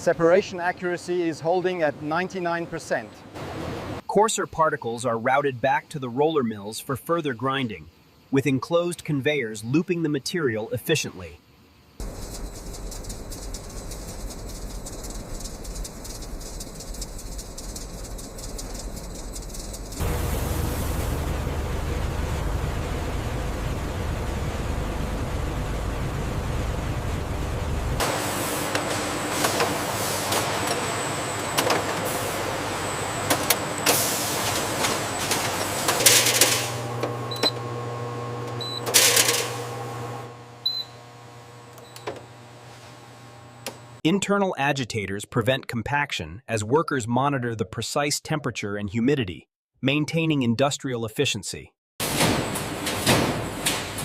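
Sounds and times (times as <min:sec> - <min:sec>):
fast crackling patter: 0:12.0 - 0:20.2
loud hissing bursts: 0:12.0 - 0:23.8, 0:33.8 - 0:34.8
mill machinery rumbling: 0:12.0 - 0:42.7.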